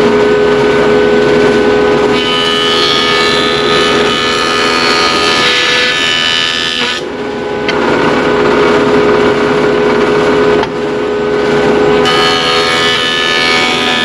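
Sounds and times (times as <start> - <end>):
wood jointer motor whine: 0.0 - 14.0
board cut by jointer: 1.4 - 7.2, 11.4 - 14.0.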